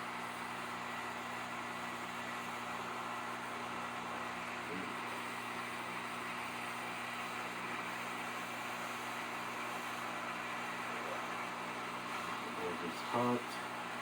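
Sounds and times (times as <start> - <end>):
hot air blowing: 0.0 - 14.0.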